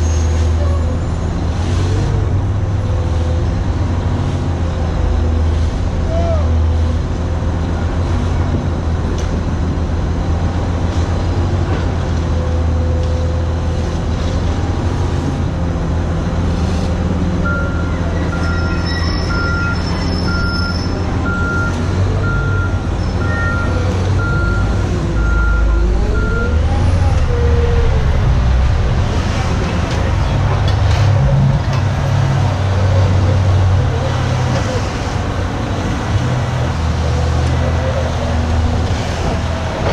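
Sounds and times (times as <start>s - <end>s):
heavy diesel machinery running: 0.0s - 39.9s.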